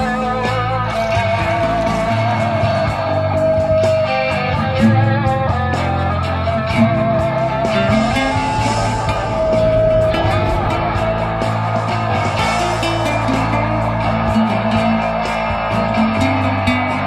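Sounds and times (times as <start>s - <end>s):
electric guitar lead: 0.0s - 17.0s
rock backing with bass: 0.0s - 17.0s.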